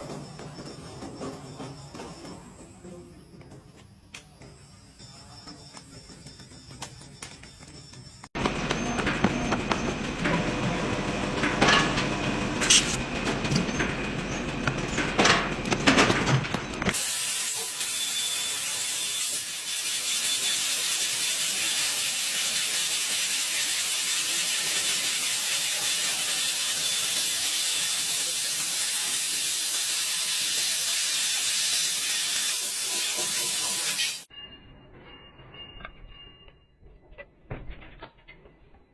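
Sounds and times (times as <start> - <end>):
machinery clattering: 8.4 - 17.0.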